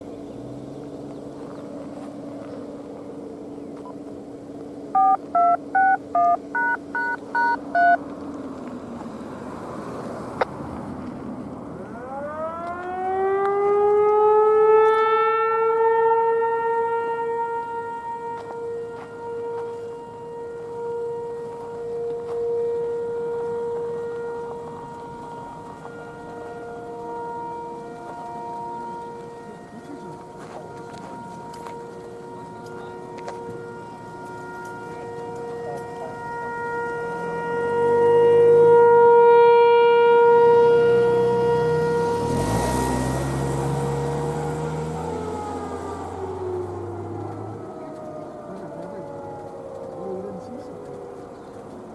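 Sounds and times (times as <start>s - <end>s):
warning siren winding up: 11.8s - 51.9s.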